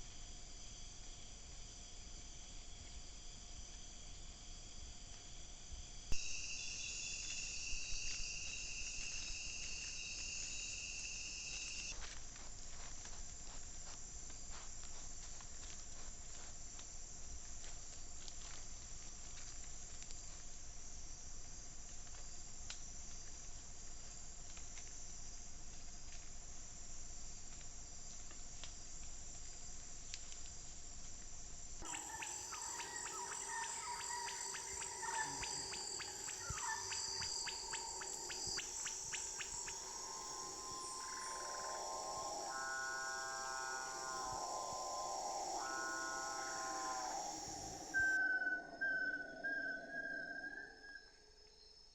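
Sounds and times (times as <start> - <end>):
high-pitched insect drone: 0.0 - 12.1, 31.8 - 51.9
faint ticks and rustles: 0.0 - 48.0.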